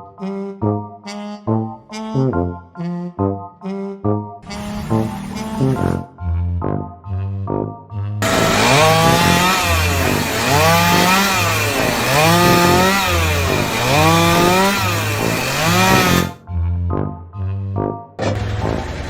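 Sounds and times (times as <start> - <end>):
small engine revving: 4.4 - 6.0, 8.2 - 16.4, 18.2 - 19.0.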